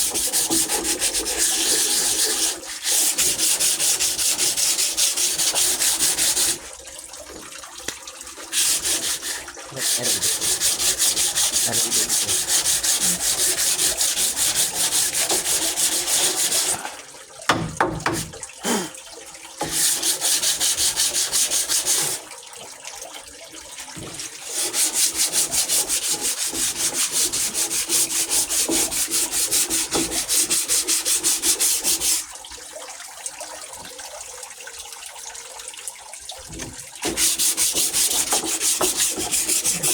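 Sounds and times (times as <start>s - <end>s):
sandpaper rubbing on wood: 0.1s - 6.6s, 8.5s - 16.8s, 19.6s - 22.2s, 24.5s - 32.2s, 37.0s - 39.9s.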